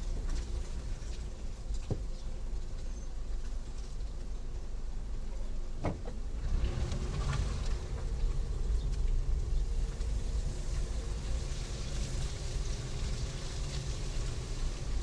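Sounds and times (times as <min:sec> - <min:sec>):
vehicle engine and road noise: 0:05.6 - 0:15.0.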